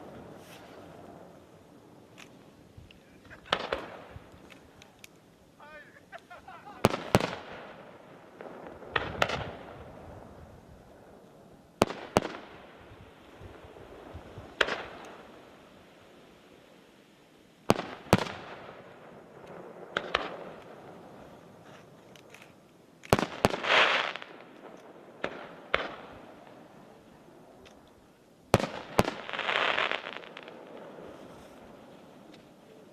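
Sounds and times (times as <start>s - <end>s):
dense fireworks crackling: 0.0s - 32.9s
fireworks bangs with echoing rumble: 3.3s - 4.3s, 6.6s - 15.3s, 17.7s - 21.3s, 23.1s - 27.0s, 28.5s - 32.2s.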